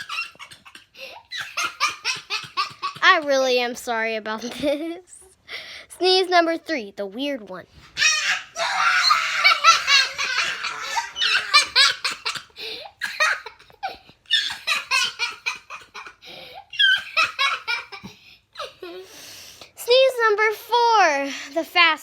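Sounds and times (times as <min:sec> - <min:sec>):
children giggling: 0:00.0 - 0:03.0, 0:08.0 - 0:19.0.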